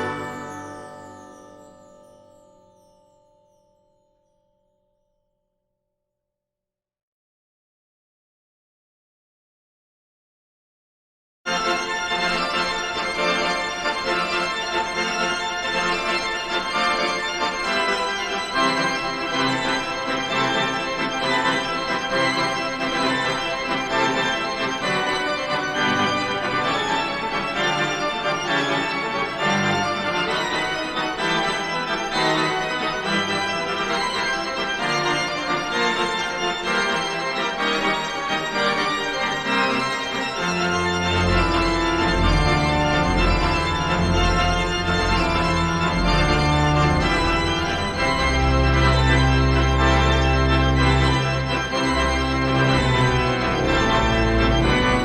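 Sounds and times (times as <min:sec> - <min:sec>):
organ music with sustained chords: 0:00.0 - 0:02.9, 0:11.5 - 0:55.0.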